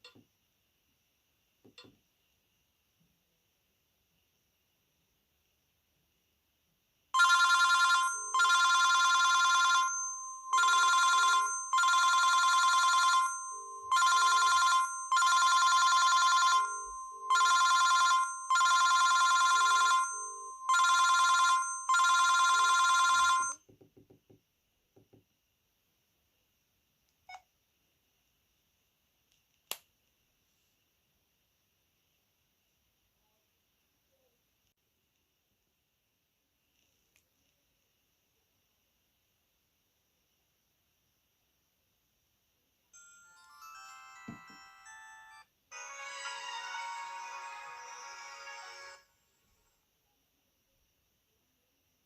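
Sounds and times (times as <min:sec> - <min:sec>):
electronic phone ringtone: 0:07.2 - 0:23.6, 0:43.0 - 0:49.1.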